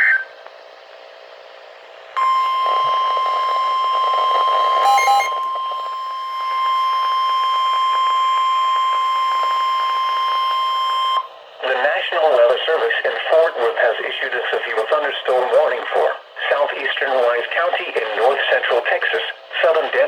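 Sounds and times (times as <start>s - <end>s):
short beeps: 2.2s - 11.3s
steady high alarm tone: 2.2s - 11.3s.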